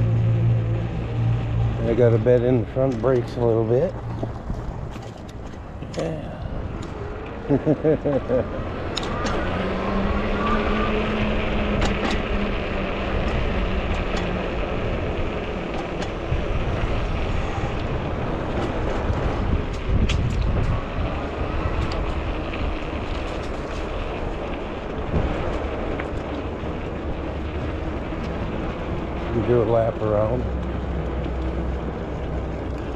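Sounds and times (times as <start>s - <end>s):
e-bike road noise: 0.0s - 32.9s
light clicks and rattles: 1.9s - 7.0s
wind on microphone: 16.1s - 29.5s.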